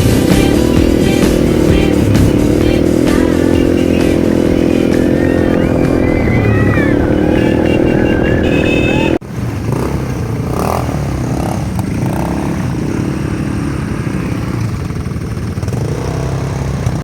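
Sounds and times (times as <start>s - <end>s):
song with singing: 0.0s - 9.2s
atv engine running: 0.0s - 17.0s
faint voices: 1.7s - 9.2s.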